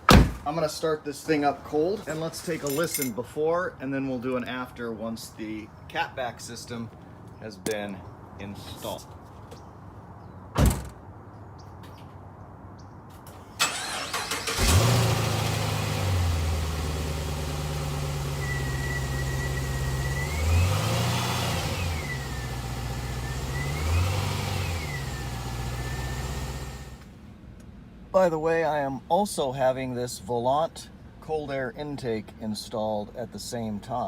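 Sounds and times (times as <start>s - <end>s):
thump: 0.1s - 0.4s, 10.6s - 11.0s
car engine idling and revving: 14.3s - 27.2s.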